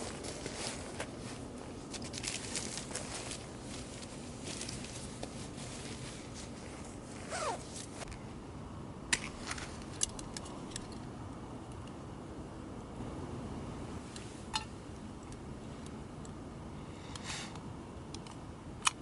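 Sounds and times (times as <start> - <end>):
rustling of gear: 0.0 - 8.2
steady low rumble: 0.0 - 19.0.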